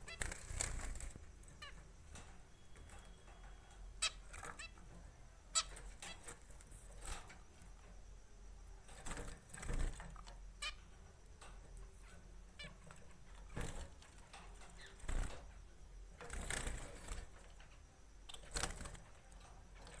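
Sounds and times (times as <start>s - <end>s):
birds chirping: 0.0s - 6.6s
birds scratching and tapping: 0.0s - 7.9s, 8.8s - 20.0s.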